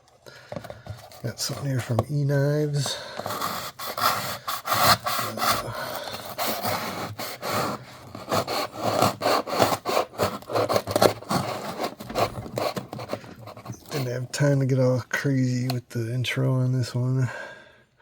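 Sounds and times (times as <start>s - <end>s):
cardboard package being opened: 2.9s - 14.1s.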